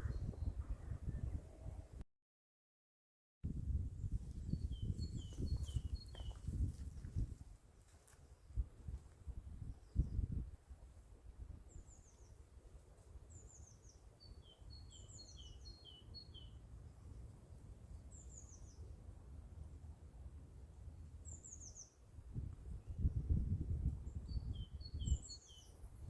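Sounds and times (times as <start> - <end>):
small bird singing falling phrases: 4.0 - 7.2, 24.1 - 26.0.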